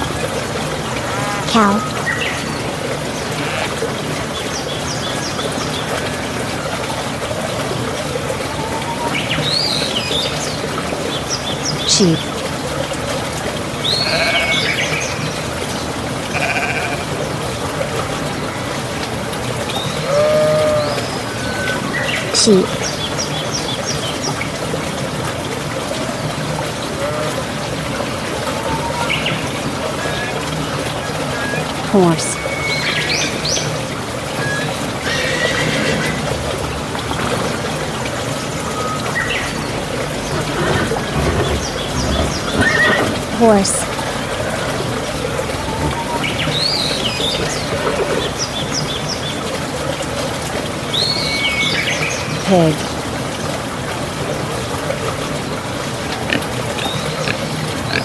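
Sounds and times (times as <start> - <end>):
outdoor background noise: 0.0 - 58.0
sheep bleating: 14.0 - 14.8, 16.3 - 17.1
horse neighing: 35.0 - 36.2.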